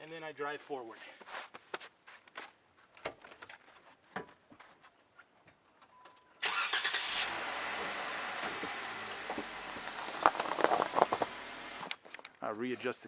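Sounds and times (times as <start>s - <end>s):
brief beep: 5.9s - 6.4s.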